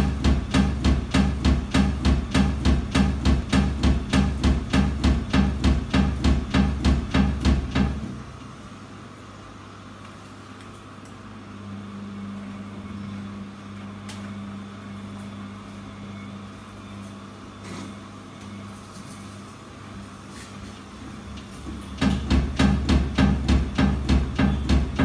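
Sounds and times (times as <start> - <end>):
rapid loud knocks: 0.0 - 8.2, 22.0 - 25.0
washing machine motor hum: 0.0 - 25.0.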